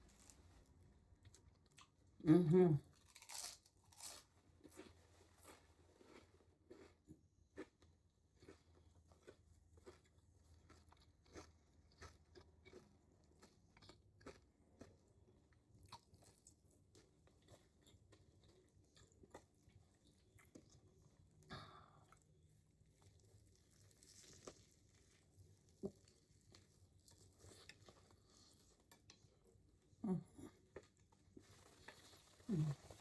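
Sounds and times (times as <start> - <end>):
sandwich chewing: 3.0 - 15.0.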